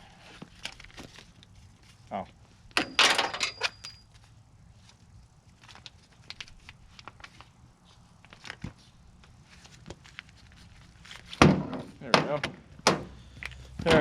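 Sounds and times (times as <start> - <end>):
metal hardware clinking and rattling: 2.8 - 4.2.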